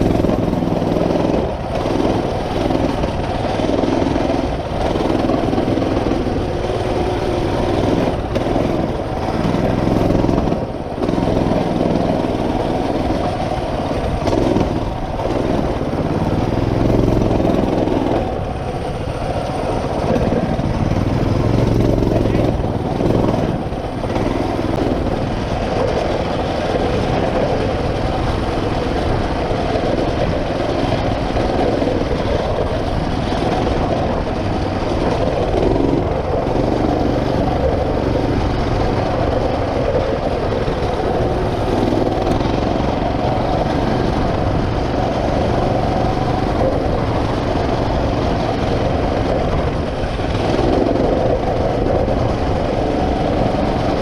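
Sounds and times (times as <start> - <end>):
small motorbike engine running: 0.0 - 54.0.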